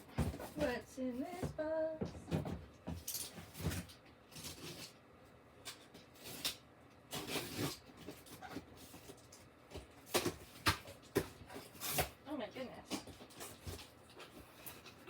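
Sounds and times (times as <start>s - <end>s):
cardboard box rustling and scraping: 0.0s - 2.5s.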